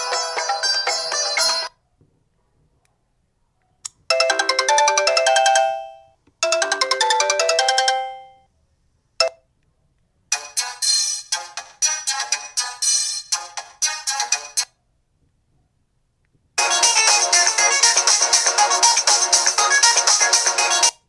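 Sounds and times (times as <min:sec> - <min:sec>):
phone ringtone: 0:00.0 - 0:01.8, 0:04.1 - 0:08.5, 0:16.6 - 0:20.9.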